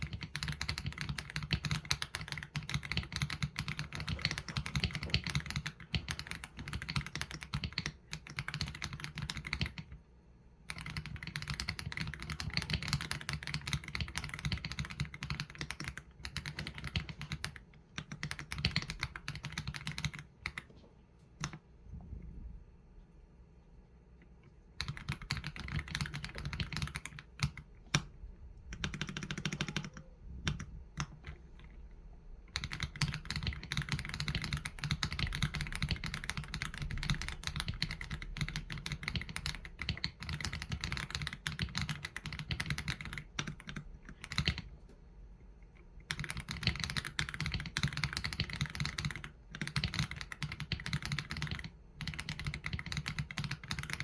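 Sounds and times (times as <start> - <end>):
mechanical keyboard typing: 0.0 - 10.0, 10.6 - 20.7, 21.4 - 21.6, 24.5 - 44.7, 45.6 - 54.0.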